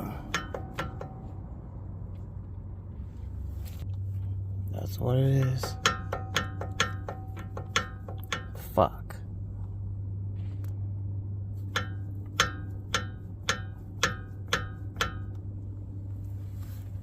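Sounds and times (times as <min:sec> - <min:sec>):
hammer striking steel: 0:00.0 - 0:01.6, 0:05.2 - 0:09.0, 0:11.6 - 0:15.5
steady low hum: 0:00.0 - 0:17.0.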